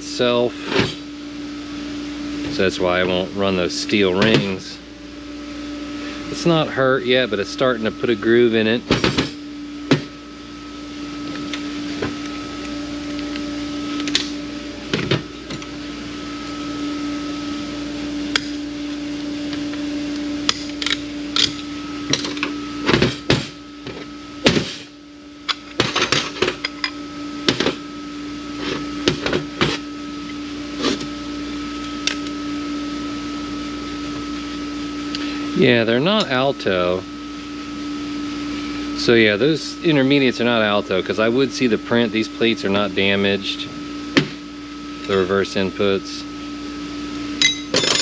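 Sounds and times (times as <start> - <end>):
steady electrical hum: 0.0 - 48.0
metal parts clinking: 47.4 - 48.0.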